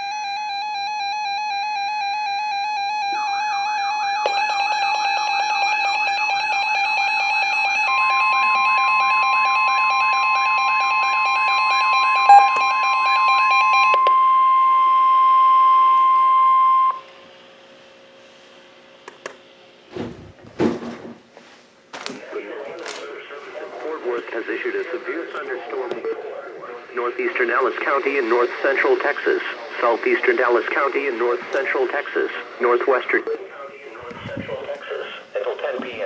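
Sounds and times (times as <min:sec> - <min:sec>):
steady alarm tone: 0:00.0 - 0:17.0
warbling siren tone: 0:12.1 - 0:14.0
rapid pulsing beeps: 0:12.3 - 0:12.8.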